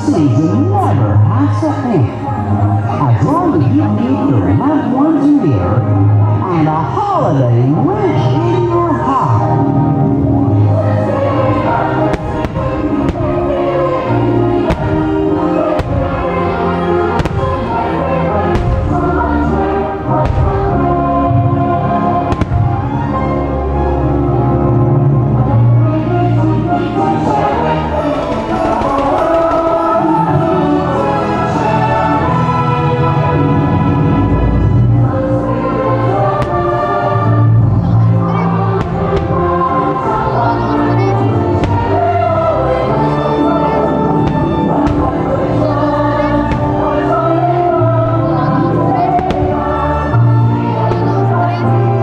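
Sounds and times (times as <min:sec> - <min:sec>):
choir singing: 0:00.0 - 0:52.0
orchestral music: 0:00.0 - 0:52.0
fireworks bursting: 0:11.2 - 0:23.2, 0:27.2 - 0:31.2, 0:36.2 - 0:38.0, 0:38.6 - 0:43.4, 0:44.0 - 0:48.1, 0:48.9 - 0:52.0.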